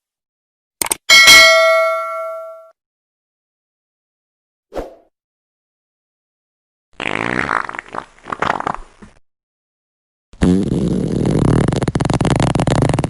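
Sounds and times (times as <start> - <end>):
person farting: 7.0 - 9.2, 10.4 - 13.0.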